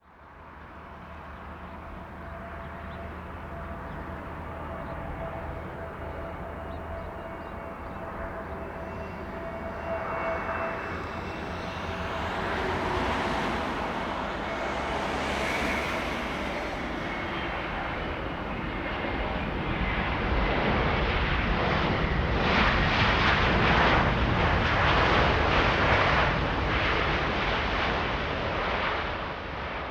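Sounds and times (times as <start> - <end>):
jet engine whine: 0.1 - 29.9
steady mid-pitched tone: 5.2 - 19.4.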